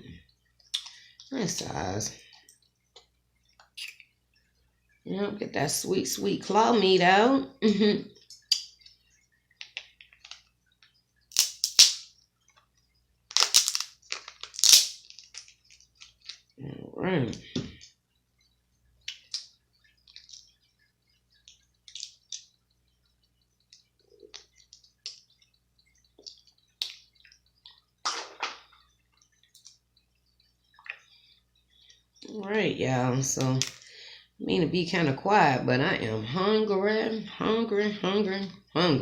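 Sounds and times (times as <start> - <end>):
crab shells cracking: 11.3 - 12.1, 13.3 - 16.4
chewing: 23.6 - 27.9.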